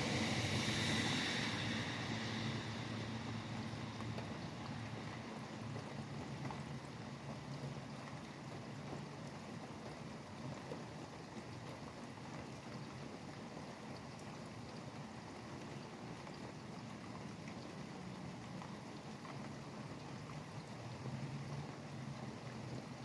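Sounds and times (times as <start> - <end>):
highway traffic rumble: 0.0 - 7.3
steady rain falling: 0.0 - 23.0.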